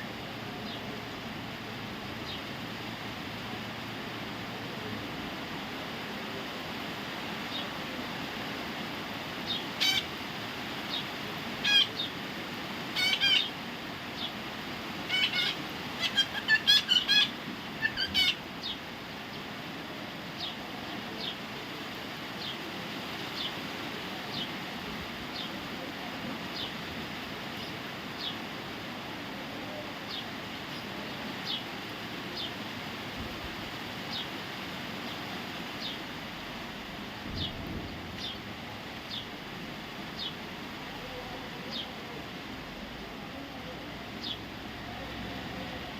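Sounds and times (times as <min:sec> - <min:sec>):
steady background hiss: 0:00.0 - 0:45.9
parrot harsh calls: 0:09.5 - 0:10.2, 0:11.6 - 0:12.2, 0:12.9 - 0:13.7, 0:15.0 - 0:18.5.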